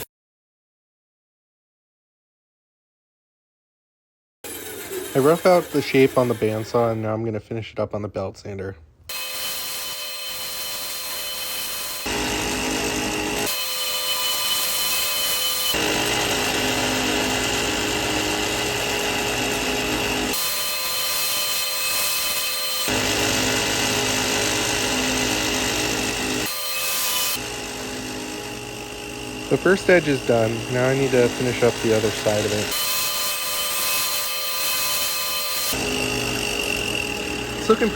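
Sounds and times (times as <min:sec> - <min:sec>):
belt sander sanding wood: 0:04.4 - 0:07.1, 0:11.2 - 0:37.9.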